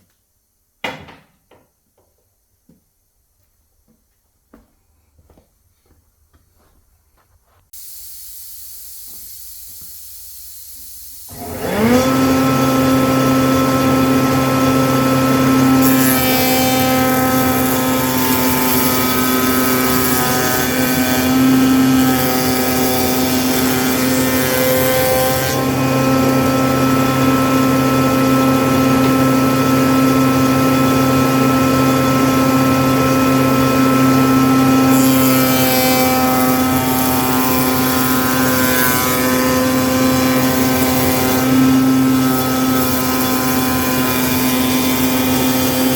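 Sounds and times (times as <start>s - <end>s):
steady hiss: 7.6s - 11.4s
router whining while cutting wood: 10.8s - 45.9s.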